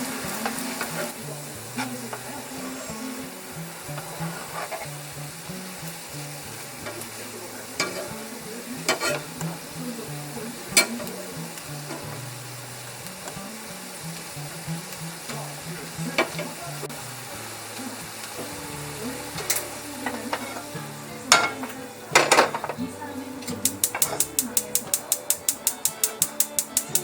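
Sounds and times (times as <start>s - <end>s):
food sizzling in frying pan: 0.0s - 27.0s
utensil clicking against pan: 6.8s - 16.6s, 23.4s - 27.0s.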